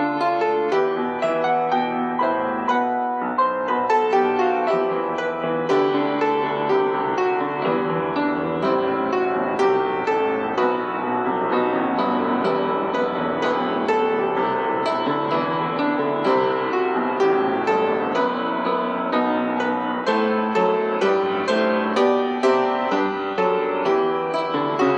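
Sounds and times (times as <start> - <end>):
piano playing: 0.0 - 24.9.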